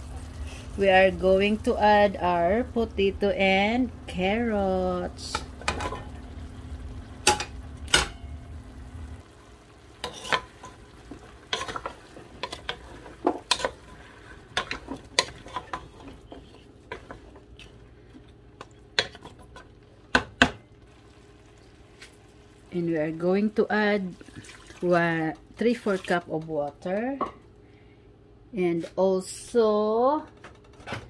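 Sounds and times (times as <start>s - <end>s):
low hum: 0.0s - 9.4s
faint sizzle: 0.0s - 30.2s
utensil scraping a pot: 10.0s - 17.7s.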